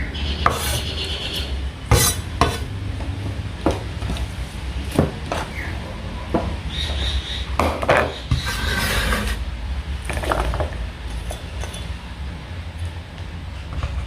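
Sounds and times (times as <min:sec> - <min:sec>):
utensils clinking on pan and dishes: 0:00.5 - 0:02.7, 0:10.3 - 0:12.0.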